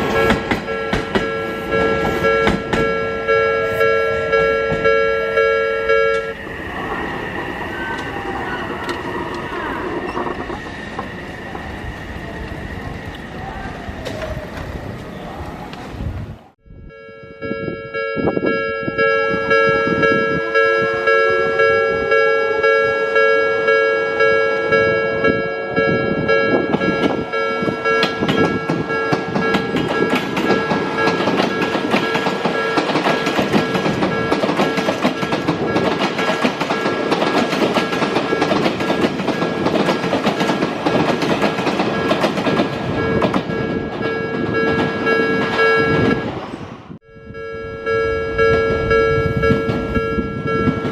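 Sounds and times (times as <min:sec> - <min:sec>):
train wheels clacking over rails: 0:00.0 - 0:03.0, 0:27.8 - 0:46.1
level-crossing alarm ringing: 0:00.0 - 0:12.8, 0:16.8 - 0:50.9
electric train rising whine: 0:00.0 - 0:50.9.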